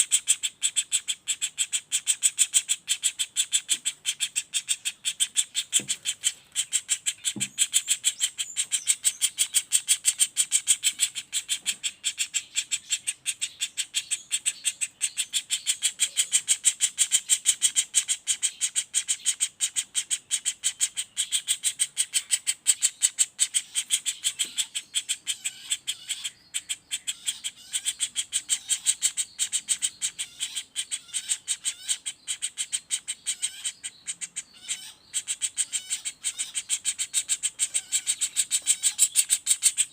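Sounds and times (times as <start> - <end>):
woodpecker rattling call: 0.0 - 39.9.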